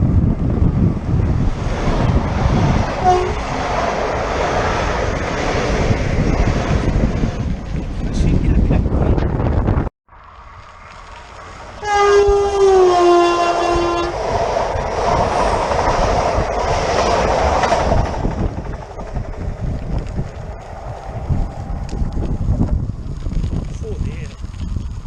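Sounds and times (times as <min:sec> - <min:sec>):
train horn blast: 0:03.0 - 0:03.5, 0:11.8 - 0:14.2
train wheel clatter: 0:12.5 - 0:22.8.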